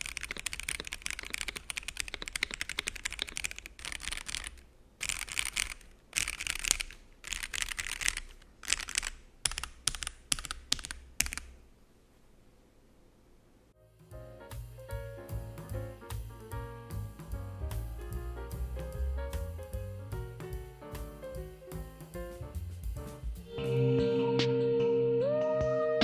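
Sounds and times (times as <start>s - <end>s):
mechanical keyboard typing: 0.0s - 11.6s.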